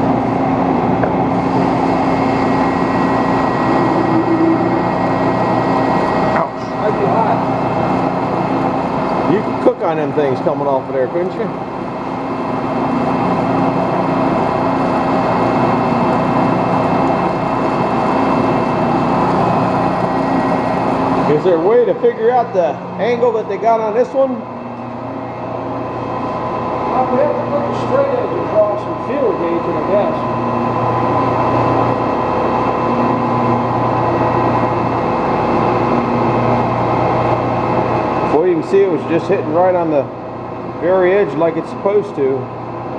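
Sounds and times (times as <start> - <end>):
metal lathe cutting: 0.0 - 42.9.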